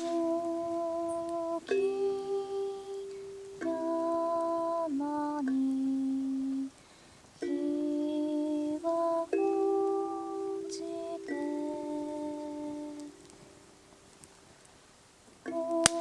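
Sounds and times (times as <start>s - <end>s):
kalimba plucks: 0.0s - 6.6s, 7.4s - 14.0s
woman humming a melody: 0.0s - 6.8s, 7.4s - 13.6s, 15.5s - 16.0s.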